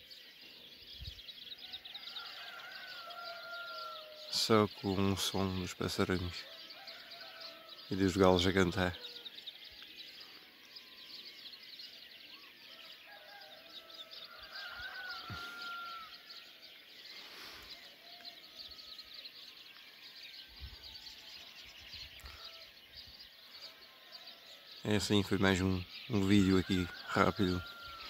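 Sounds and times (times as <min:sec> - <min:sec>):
songbirds chirping and trilling: 0:00.0 - 0:28.0
rooster crowing faintly: 0:12.7 - 0:16.3.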